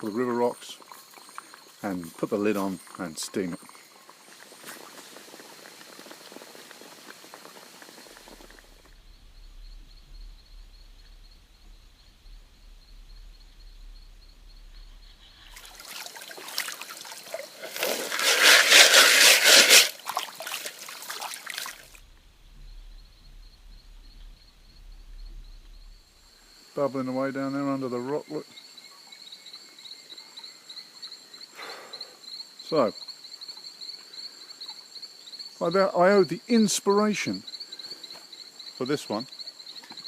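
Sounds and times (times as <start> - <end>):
fire hissing and crackling: 0.8 - 20.0
water boiling and bubbling: 4.0 - 26.4.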